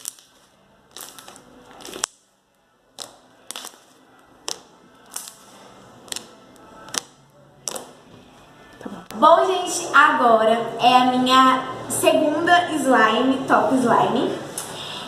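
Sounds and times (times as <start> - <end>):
slime clicking and popping: 0.0 - 2.2, 3.0 - 8.0.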